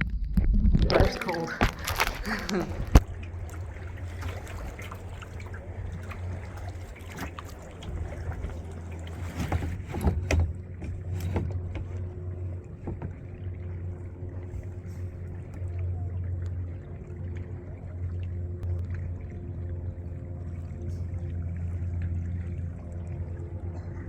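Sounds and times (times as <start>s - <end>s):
steady low hum: 0.0s - 24.0s
water sloshing against hull: 0.0s - 24.0s
paddle splashes: 0.8s - 24.0s
knocks on kayak: 12.8s - 13.2s.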